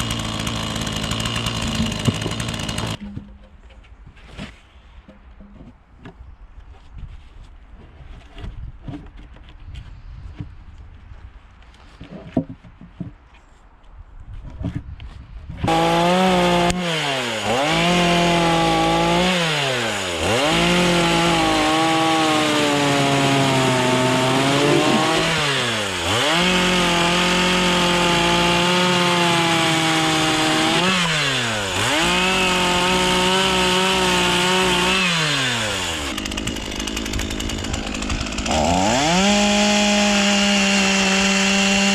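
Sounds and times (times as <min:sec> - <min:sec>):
chainsaw cutting timber: 0:00.0 - 0:03.2, 0:15.6 - 0:41.9.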